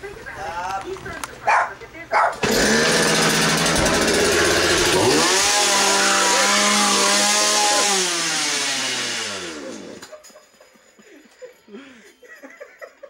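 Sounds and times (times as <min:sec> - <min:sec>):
chainsaw revving: 0:02.4 - 0:10.2.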